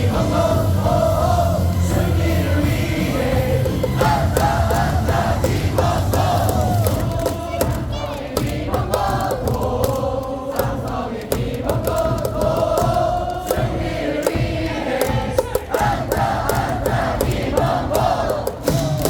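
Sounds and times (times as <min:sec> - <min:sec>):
amplified music: 0:00.0 - 0:10.2
crowd singing in unison: 0:00.0 - 0:19.0
sharp beats: 0:02.0 - 0:19.0.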